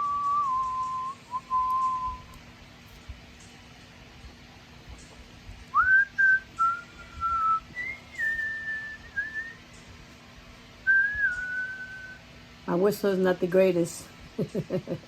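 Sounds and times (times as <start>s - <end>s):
woman whistling a tune: 0.0s - 2.4s, 5.8s - 9.6s, 10.9s - 12.2s.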